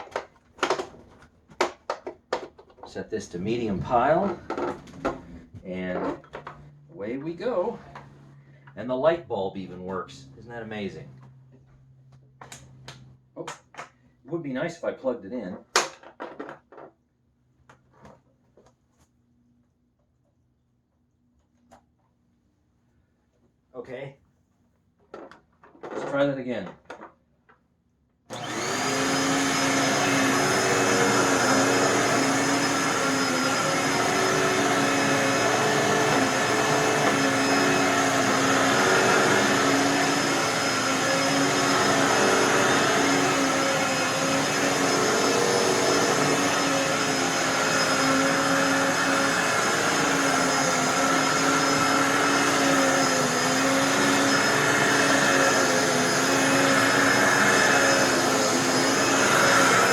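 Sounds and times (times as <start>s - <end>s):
vacuum cleaner motor whining: 0.0s - 1.0s, 1.6s - 8.2s, 28.3s - 59.9s.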